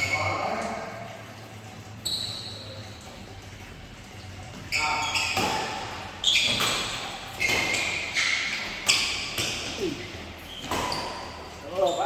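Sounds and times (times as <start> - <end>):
shoe squeaks: 0.0 - 0.4, 2.0 - 3.0, 4.6 - 12.0
racket hitting shuttlecock: 5.1 - 9.9, 10.6 - 11.4.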